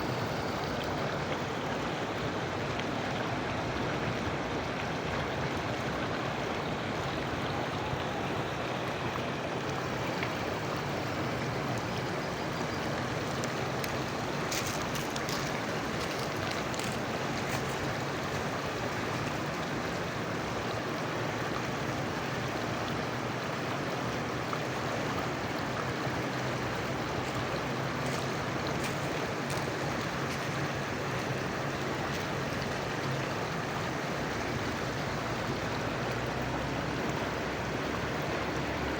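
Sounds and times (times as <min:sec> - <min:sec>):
rushing water: 0:00.0 - 0:38.9
faint high ticks or splashes: 0:09.8 - 0:20.4, 0:26.0 - 0:35.5.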